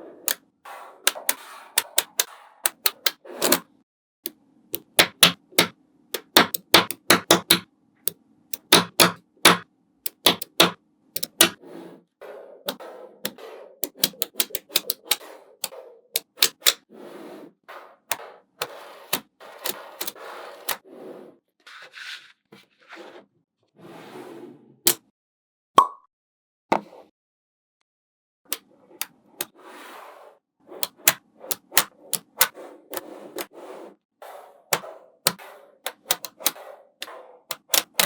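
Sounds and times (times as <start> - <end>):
magnetic balls clicking: 1.1 - 3.6, 4.8 - 11.6, 13.8 - 16.8, 37.5 - 38.0.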